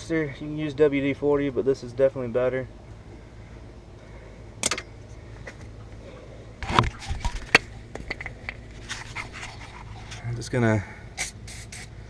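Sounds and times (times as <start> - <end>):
faint low hum: 0.0 - 12.0.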